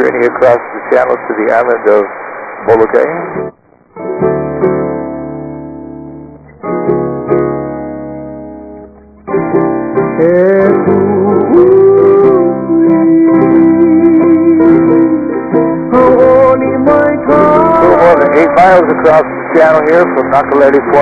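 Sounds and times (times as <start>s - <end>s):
plucked chords: 3.4s - 21.0s
person singing: 10.1s - 21.0s.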